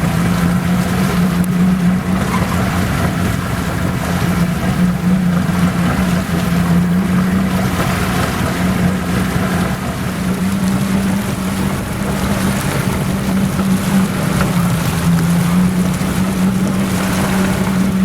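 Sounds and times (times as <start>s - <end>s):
boat engine droning: 0.0s - 18.0s
water rushing along hull: 0.0s - 18.0s.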